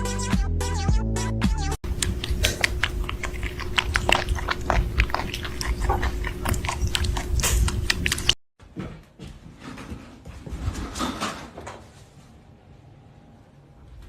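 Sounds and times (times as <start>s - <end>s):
pet chewing crunchily: 1.8s - 8.4s
steady low hum: 1.8s - 8.4s.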